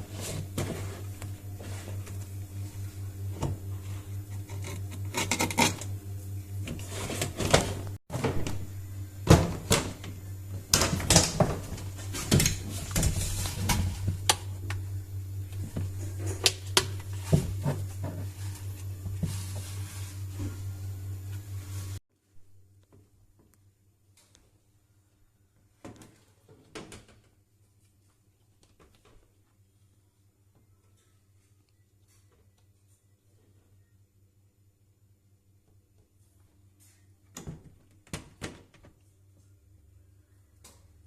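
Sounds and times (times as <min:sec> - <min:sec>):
spin-dryer motor humming: 0:00.0 - 0:22.0.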